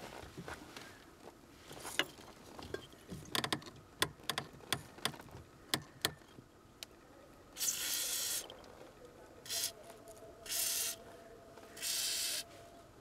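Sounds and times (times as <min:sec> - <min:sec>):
aerosol spray hiss: 0:11.8 - 0:12.4.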